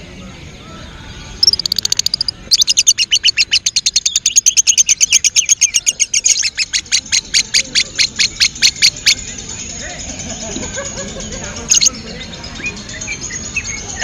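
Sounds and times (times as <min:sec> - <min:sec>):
lovebird chattering trill: 0:01.4 - 0:09.3, 0:11.7 - 0:14.0.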